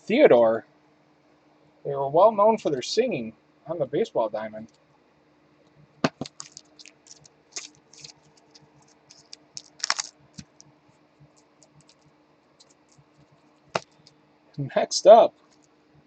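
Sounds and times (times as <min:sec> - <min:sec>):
scratchy rustle: 0:06.3 - 0:10.6, 0:11.2 - 0:13.6.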